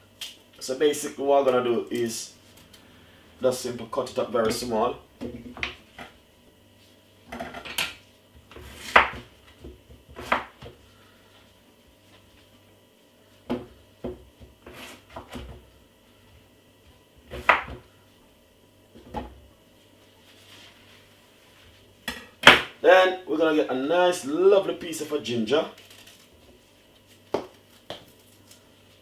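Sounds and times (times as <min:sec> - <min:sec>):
knife chopping on board: 0:08.5 - 0:10.8, 0:17.3 - 0:17.8.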